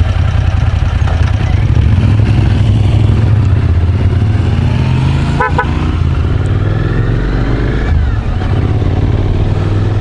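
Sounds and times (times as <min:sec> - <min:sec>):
motorcycle engine drone: 0:00.0 - 0:10.0
road and wind noise: 0:00.0 - 0:10.0
vehicle horn toots: 0:05.3 - 0:05.9.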